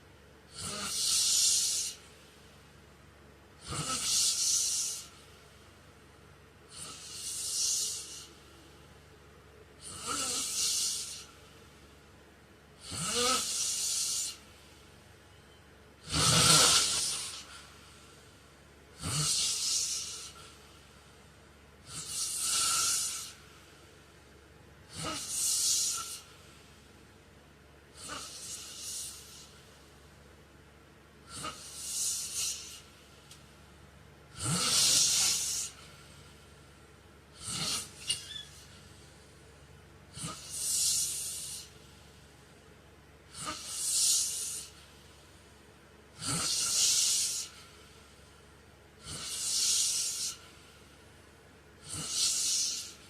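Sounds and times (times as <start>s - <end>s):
man snoring with low rattle: 0.5s - 2.1s, 3.6s - 5.2s, 6.7s - 8.4s, 9.8s - 11.4s, 12.8s - 14.4s, 16.0s - 17.6s, 18.9s - 20.5s, 21.8s - 23.4s, 24.9s - 26.3s, 27.9s - 29.5s, 31.2s - 32.9s, 34.3s - 35.9s, 37.3s - 38.1s, 40.1s - 41.7s, 43.3s - 44.7s, 46.1s - 47.6s, 49.0s - 50.4s, 51.8s - 53.0s.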